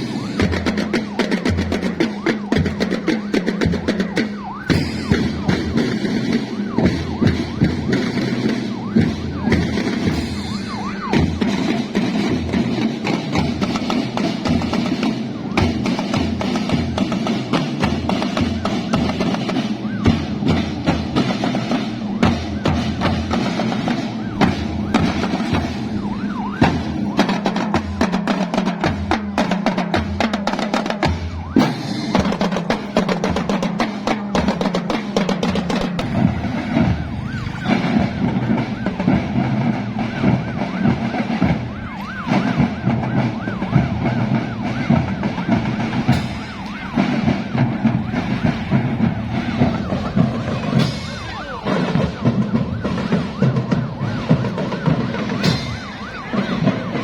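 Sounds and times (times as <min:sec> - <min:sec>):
electronic siren yelping: 0:00.0 - 0:12.2, 0:18.3 - 0:28.9, 0:30.2 - 0:57.0
marching drum hits: 0:00.0 - 0:41.7, 0:42.3 - 0:57.0
whistle-like tones: 0:36.1 - 0:39.0.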